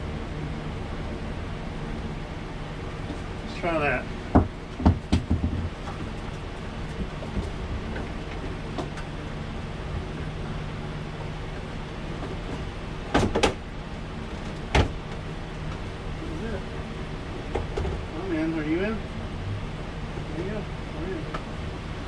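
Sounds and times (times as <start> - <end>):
steady low hum: 0.0 - 22.0
hard knocks and clunks: 4.3 - 6.1.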